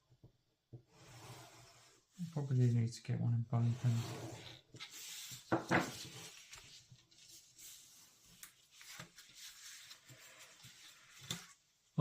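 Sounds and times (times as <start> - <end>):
cardstock rustling: 4.8 - 11.7.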